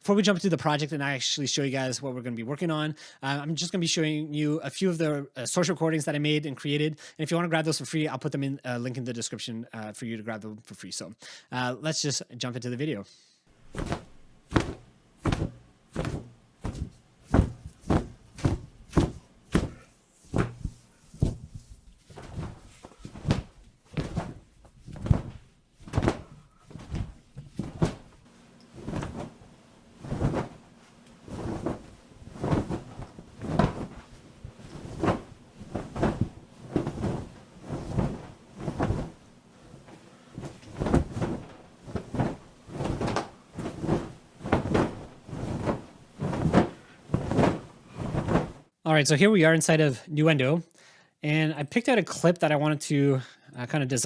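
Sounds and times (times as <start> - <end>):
cloth flapping through air: 13.5 - 48.7.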